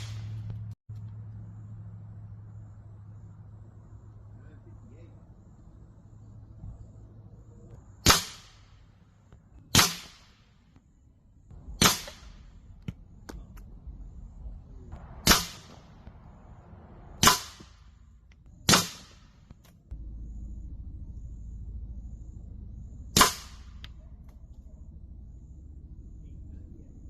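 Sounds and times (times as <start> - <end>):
air rifle shots: 0.0 - 0.5, 8.0 - 9.0, 9.7 - 10.6, 11.6 - 12.8, 14.9 - 16.2, 17.1 - 18.0, 18.6 - 19.6, 23.1 - 23.9.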